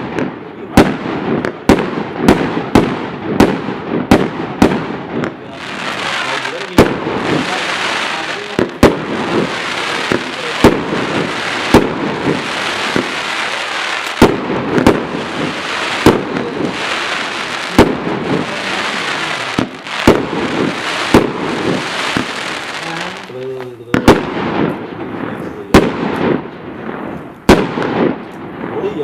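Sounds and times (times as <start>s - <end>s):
firework bangs: 0.0s - 29.0s
firework crackling hiss: 5.6s - 24.7s.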